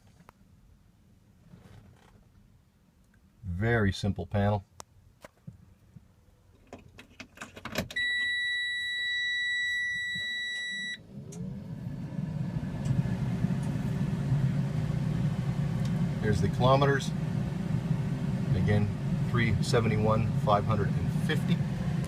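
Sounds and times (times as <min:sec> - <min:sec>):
diesel engine cranking and idling: 0:11.0 - 0:22.0.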